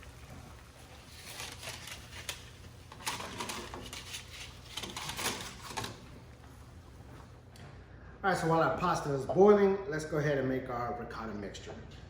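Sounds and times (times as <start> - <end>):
dry noodles clicking and rustling: 0.0 - 6.5.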